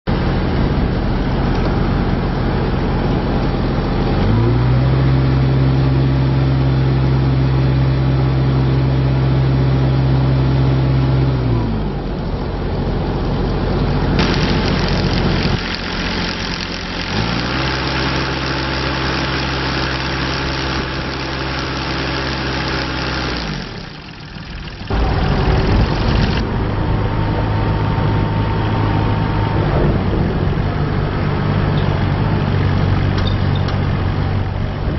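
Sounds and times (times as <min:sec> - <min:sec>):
excavator diesel engine revving: 0:00.2 - 0:08.7, 0:13.9 - 0:34.9.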